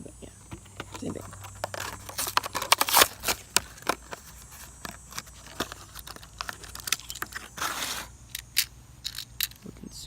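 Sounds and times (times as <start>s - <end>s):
plastic and card crinkling: 0.4s - 8.1s
packaging tearing: 0.8s - 8.1s.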